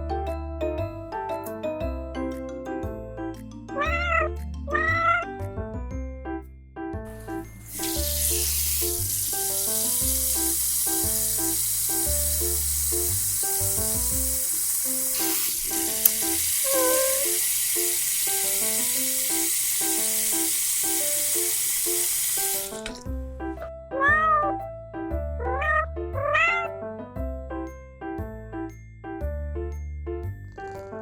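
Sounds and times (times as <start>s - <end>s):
light background music: 0.0s - 17.2s, 22.8s - 31.0s
cat meowing: 3.8s - 5.3s, 23.9s - 24.6s, 25.4s - 26.7s
food frying sizzle: 7.2s - 23.1s.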